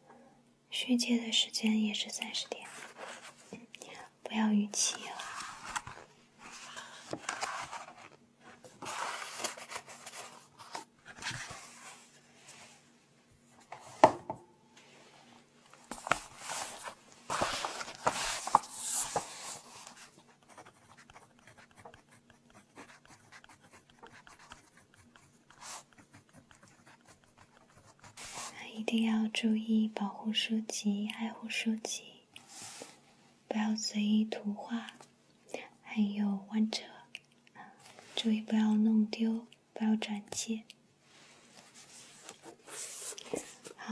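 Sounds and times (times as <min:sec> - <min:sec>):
paper rustling: 0:04.9 - 0:12.6, 0:15.7 - 0:20.2, 0:41.5 - 0:43.8.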